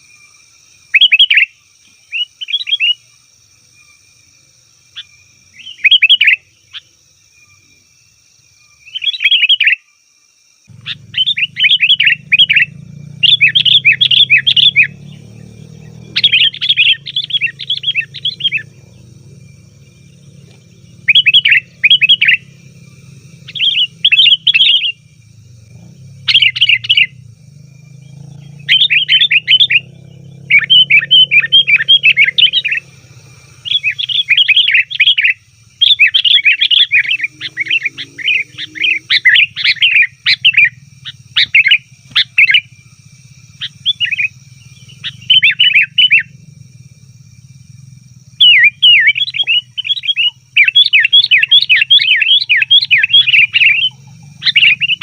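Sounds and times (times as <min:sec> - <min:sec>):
bird chattering calls: 0:10.7 - 0:55.0.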